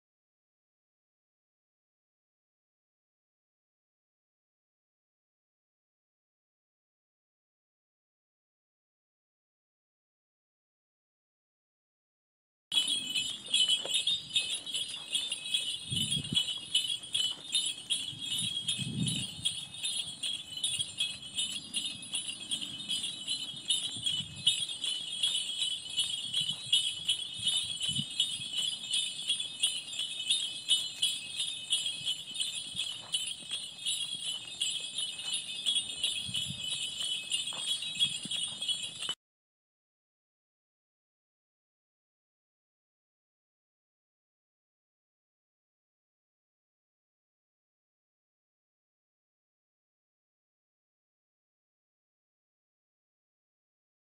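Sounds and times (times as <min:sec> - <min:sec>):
sleigh bells jingling: 0:12.7 - 0:39.2.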